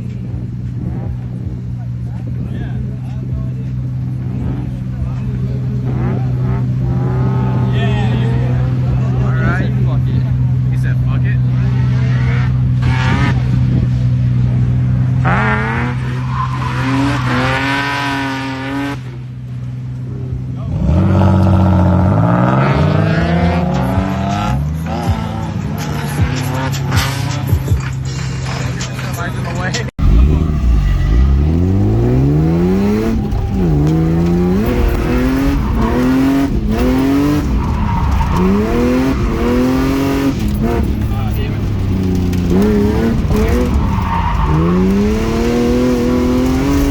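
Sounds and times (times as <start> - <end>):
car engine revving hard: 14.6 - 19.2, 20.7 - 27.4, 30.0 - 46.9
low engine drone: 30.0 - 46.9
tyres squealing: 30.0 - 46.9.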